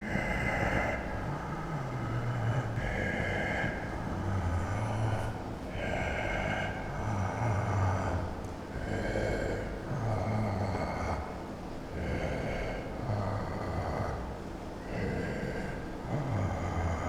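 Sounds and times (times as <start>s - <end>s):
heavy creepy breathing: 0.0s - 10.3s, 11.1s - 17.0s.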